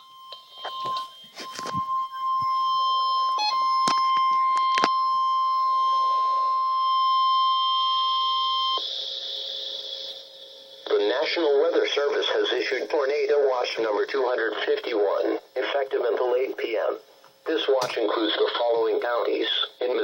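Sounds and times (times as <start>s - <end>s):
steady electronic alarm tone: 0.0s - 18.7s
radio static clicks: 10.9s - 20.0s.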